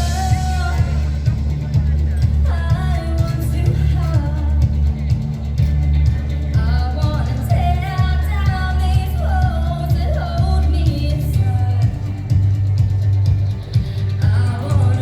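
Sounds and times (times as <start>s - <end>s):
rock-pop song with male vocals: 0.0s - 4.9s, 13.8s - 15.0s.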